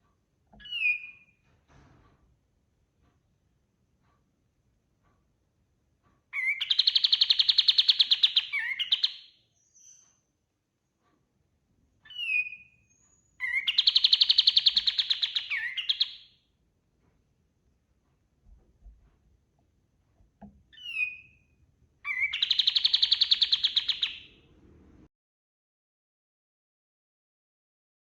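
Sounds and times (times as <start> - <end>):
bird trilling song: 0.5 - 1.4, 6.3 - 10.4, 12.0 - 16.4, 20.7 - 24.5.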